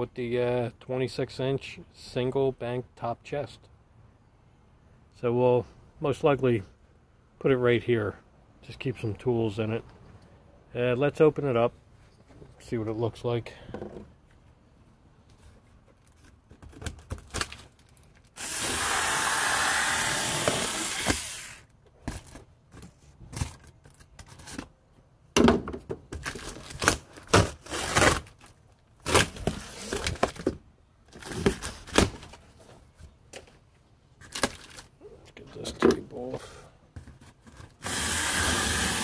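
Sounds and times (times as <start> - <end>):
cardboard tearing: 26.2 - 30.4.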